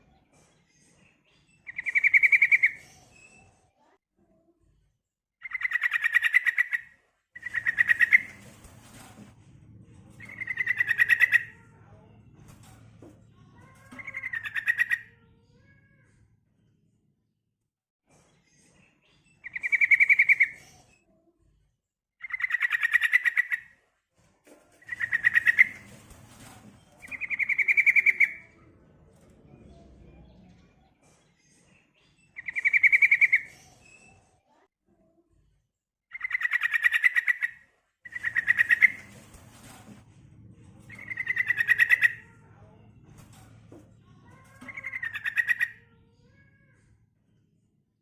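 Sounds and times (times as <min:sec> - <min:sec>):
bird chattering calls: 0:07.4 - 0:08.4, 0:10.3 - 0:11.5, 0:14.0 - 0:15.0, 0:24.9 - 0:25.9, 0:36.1 - 0:39.1, 0:41.0 - 0:42.2, 0:44.7 - 0:45.8.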